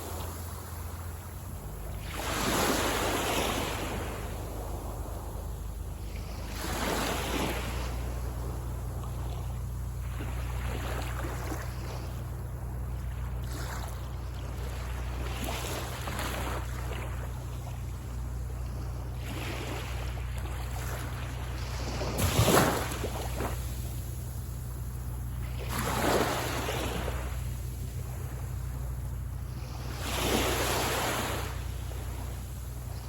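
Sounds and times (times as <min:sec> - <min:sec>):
low rumble of sea: 0:00.0 - 0:33.0
small waves washing onto beach: 0:00.0 - 0:33.0
wind: 0:00.0 - 0:33.0.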